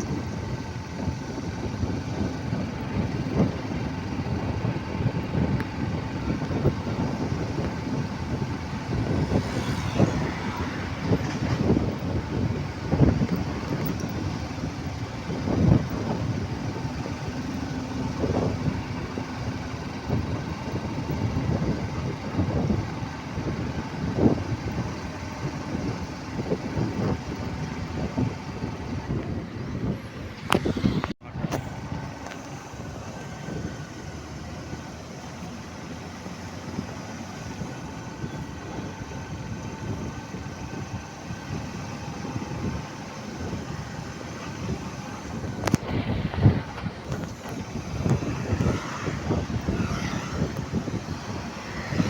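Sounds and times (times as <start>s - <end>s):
truck traffic: 0.0s - 52.0s
vehicle engine rumble: 0.0s - 52.0s
vehicle bumps: 1.6s - 19.6s, 43.4s - 52.0s.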